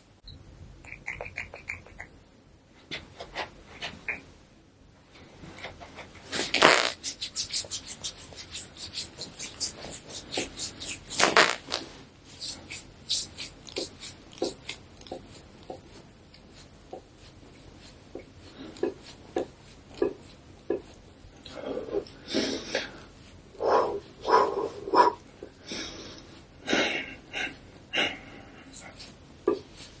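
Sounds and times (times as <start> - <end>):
hands massaging skin: 5.6 - 21.1, 28.7 - 30.0.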